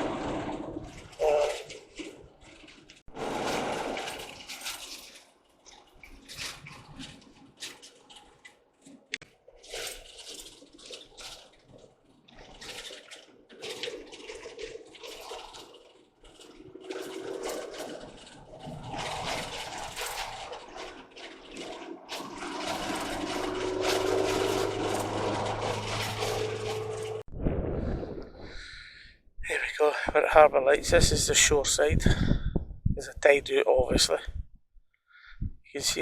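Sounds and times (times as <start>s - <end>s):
rushing road noise: 16.6s - 27.3s
low engine hum: 22.1s - 28.3s.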